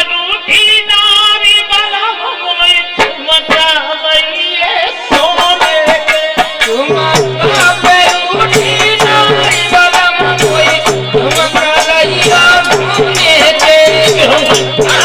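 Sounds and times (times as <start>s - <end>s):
rattling percussion beat: 5.1s - 15.0s
sustained folk melody: 5.1s - 15.0s.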